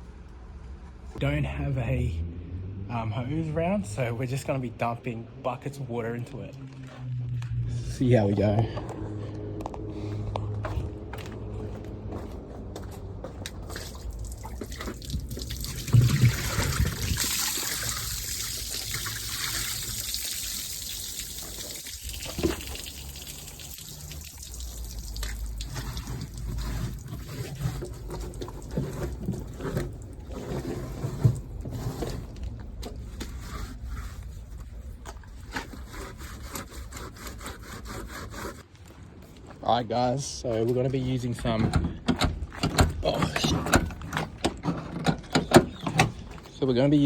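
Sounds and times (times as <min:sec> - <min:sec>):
water trickling and dripping: 0:13.6 - 0:30.3.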